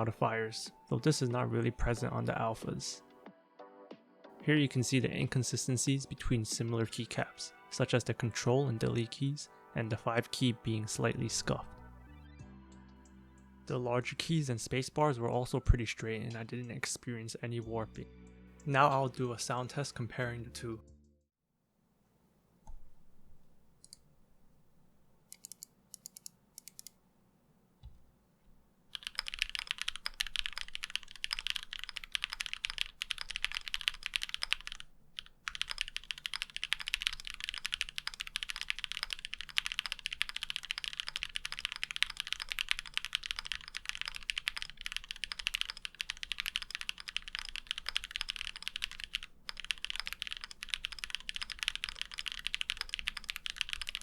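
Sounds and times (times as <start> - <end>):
typing on mechanical keyboard: 28.9 - 54.0.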